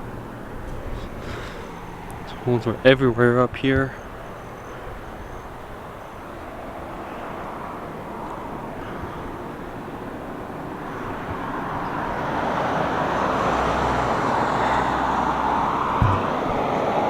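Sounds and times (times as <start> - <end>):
road traffic rushing: 0.0 - 17.0
low thump: 16.0 - 16.6.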